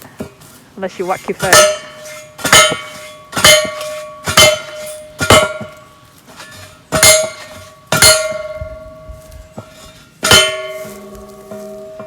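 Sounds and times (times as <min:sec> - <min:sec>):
post driver clanging on metal post: 0:01.4 - 0:08.7.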